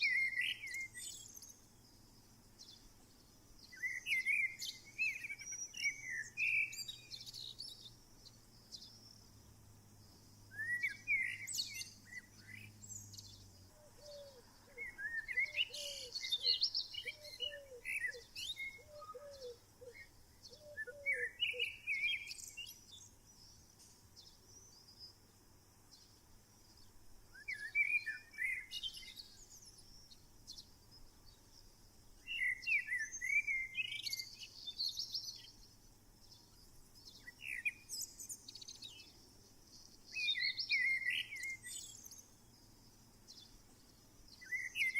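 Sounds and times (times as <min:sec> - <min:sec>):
bird chirping phrase: 0:10.6 - 0:23.6.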